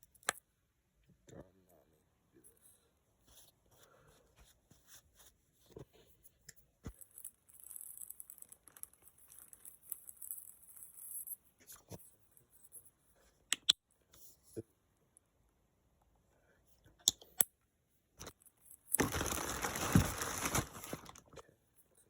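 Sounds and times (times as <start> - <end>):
small clicks and taps: 13.5 - 13.8.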